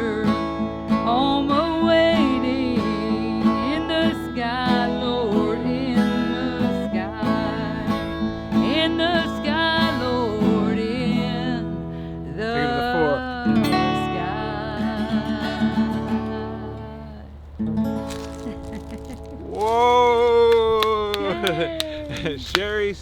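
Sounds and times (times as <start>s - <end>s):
woman singing with vibrato: 0.0s - 17.4s
acoustic guitar: 0.0s - 23.0s.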